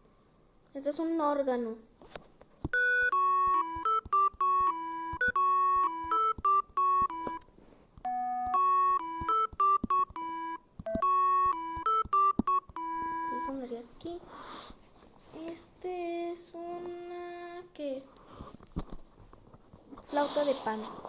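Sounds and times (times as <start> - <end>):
electronic organ melody: 2.8 - 13.7.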